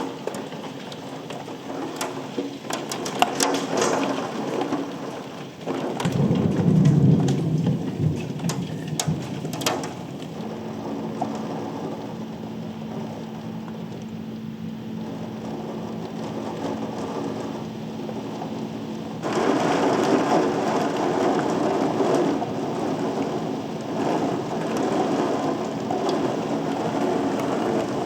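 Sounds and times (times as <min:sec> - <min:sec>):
sharp drips and knocks: 0:00.0 - 0:12.2
steady rain: 0:00.0 - 0:28.0
thunder rumble: 0:03.0 - 0:28.0.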